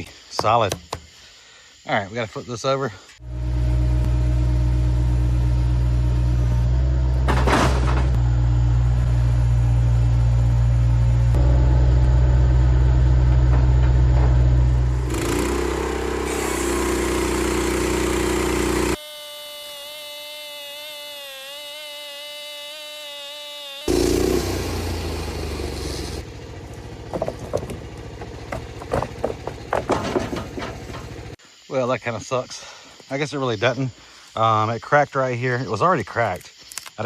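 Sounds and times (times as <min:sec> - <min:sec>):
sawmill engine running: 0:03.2 - 0:19.0, 0:23.9 - 0:31.4.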